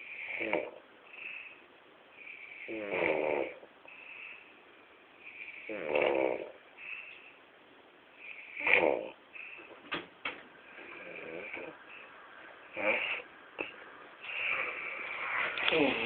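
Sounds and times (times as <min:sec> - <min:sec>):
man snoring: 0:00.1 - 0:01.5, 0:02.5 - 0:03.6, 0:05.5 - 0:06.6, 0:08.4 - 0:09.2, 0:10.8 - 0:11.8, 0:12.7 - 0:13.7, 0:15.6 - 0:16.0.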